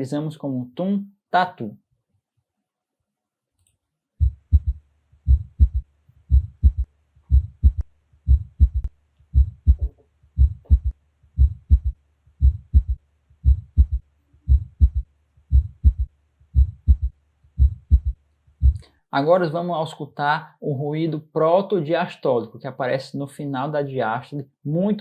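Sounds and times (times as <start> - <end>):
heartbeat through stethoscope: 4.2 - 18.8.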